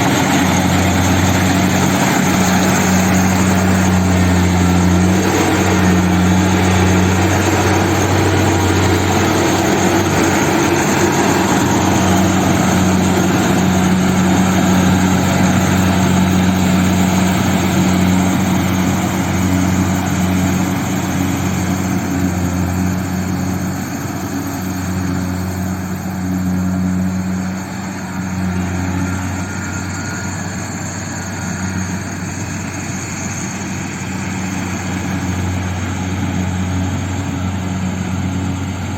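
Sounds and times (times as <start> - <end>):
diesel engine drone: 0.0 - 38.9
harvester machine rushing noise: 0.0 - 38.9.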